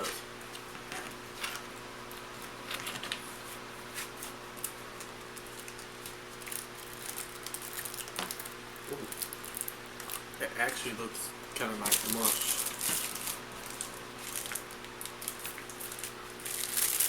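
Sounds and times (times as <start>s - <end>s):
low electrical hum: 0.0s - 17.0s
packaging crinkling: 4.6s - 10.3s, 11.8s - 17.0s.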